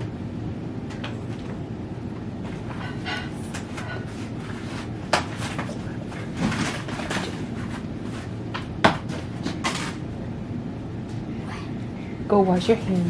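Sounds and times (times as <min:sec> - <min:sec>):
low room hum: 0:00.0 - 0:13.0.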